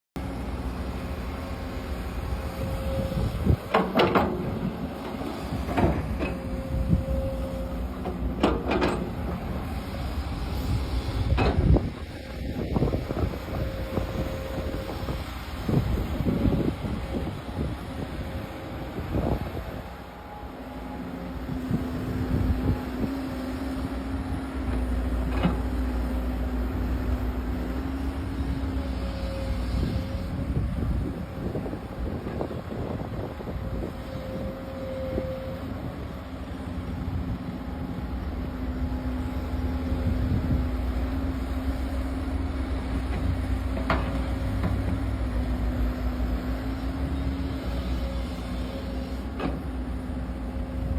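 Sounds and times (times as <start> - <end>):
excavator engine droning: 0.2 - 50.9
sharp clanks and squeals: 2.7 - 9.4.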